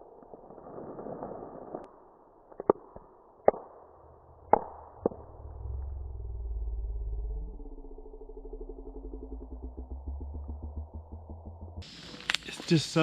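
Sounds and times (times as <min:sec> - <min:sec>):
low steady hum: 0:04.0 - 0:13.0.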